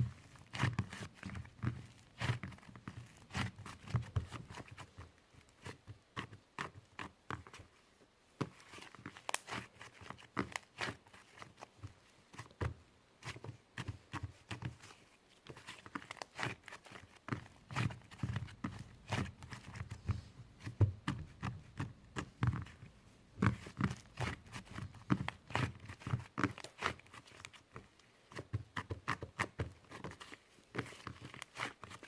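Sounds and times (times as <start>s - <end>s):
slime clicking and crackling: 8.8s - 11.6s, 23.4s - 27.8s.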